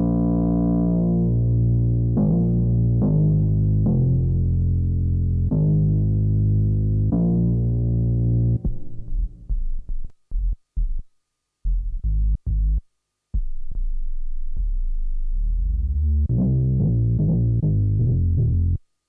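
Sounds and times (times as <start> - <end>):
low synthesizer bass notes: 0.0 - 9.6, 13.4 - 18.8.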